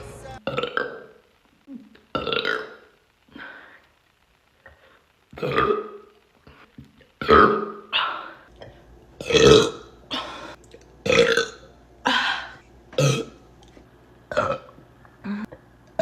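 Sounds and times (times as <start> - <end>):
woman burping: 0.4 - 2.8, 9.2 - 13.4, 14.3 - 16.0.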